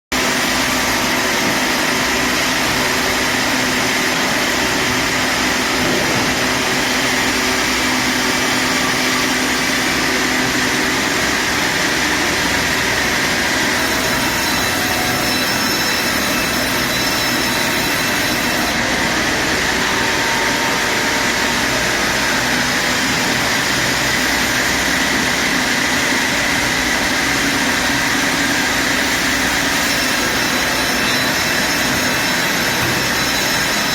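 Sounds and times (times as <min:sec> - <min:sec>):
band saw sawing a log: 0:00.2 - 0:33.9.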